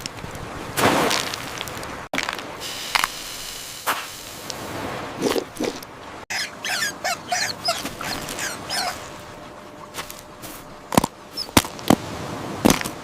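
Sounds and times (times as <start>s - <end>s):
squeaky animal calls: 6.3s - 9.1s.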